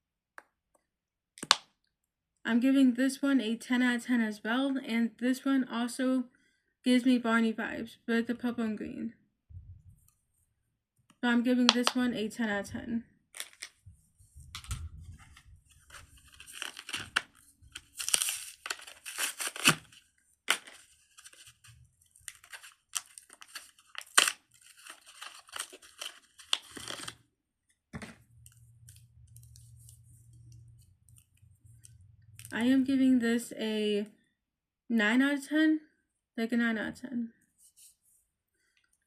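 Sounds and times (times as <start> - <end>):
fidget toys rustling: 13.4 - 27.1.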